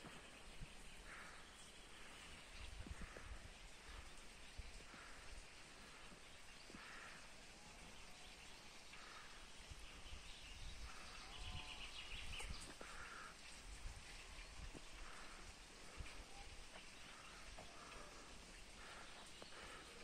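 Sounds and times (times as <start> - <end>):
low wind rumble: 0.0 - 6.2.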